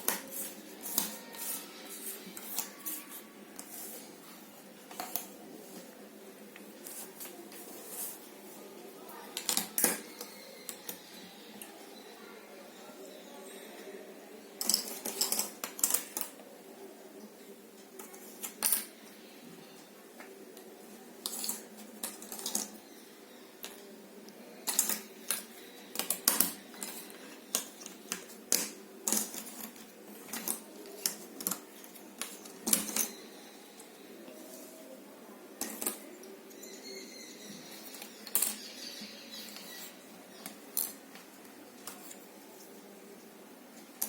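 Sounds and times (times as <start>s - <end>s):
jigsaw puzzle pieces clicking: 14.6s - 16.3s, 21.2s - 22.8s, 24.6s - 33.2s, 35.6s - 36.0s.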